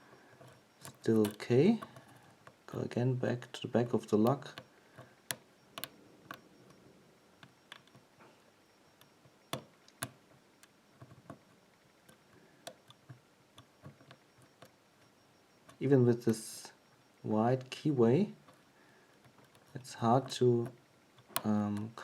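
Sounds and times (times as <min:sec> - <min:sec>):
lock pick clicking in a lock: 0:00.4 - 0:02.6.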